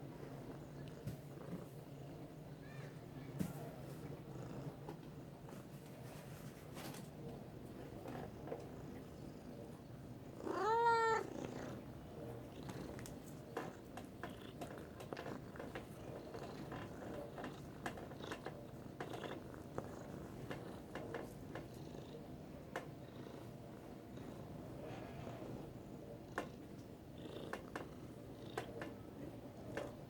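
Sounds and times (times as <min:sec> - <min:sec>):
cat purring: 0:00.0 - 0:02.8, 0:03.4 - 0:05.7, 0:06.3 - 0:30.0
cat meowing: 0:10.4 - 0:11.3
faint clicks: 0:12.7 - 0:19.4.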